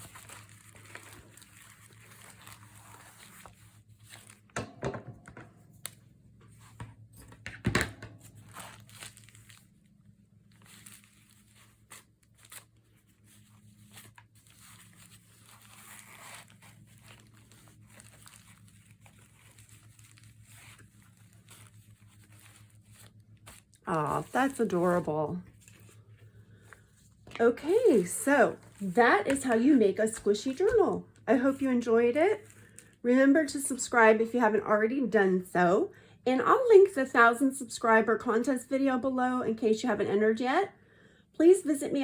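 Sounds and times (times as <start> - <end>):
paper crinkling and rustling: 0.0 - 4.6, 8.1 - 31.5.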